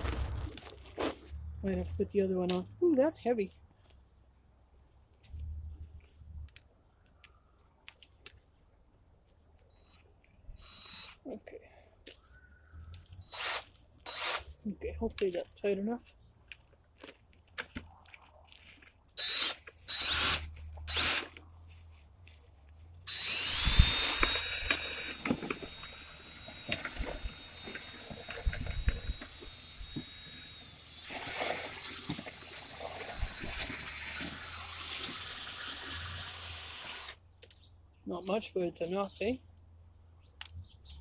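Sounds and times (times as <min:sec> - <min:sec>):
brush scraping in duct: 0:00.0 - 0:01.3
power drill whining: 0:10.6 - 0:11.2, 0:13.2 - 0:14.5, 0:19.2 - 0:21.3, 0:23.1 - 0:37.2.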